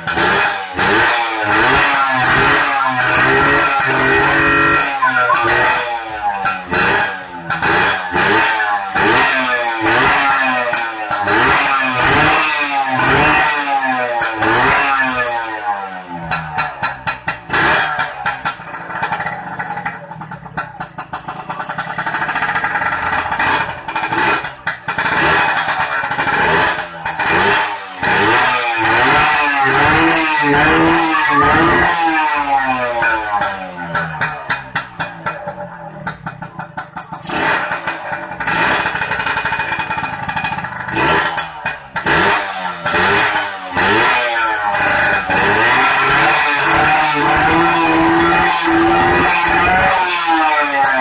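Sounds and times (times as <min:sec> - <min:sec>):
engine revving: 0:00.0 - 0:19.2, 0:21.9 - 0:34.5, 0:37.2 - 0:51.0
engine idling: 0:16.2 - 0:27.2, 0:33.7 - 0:43.1.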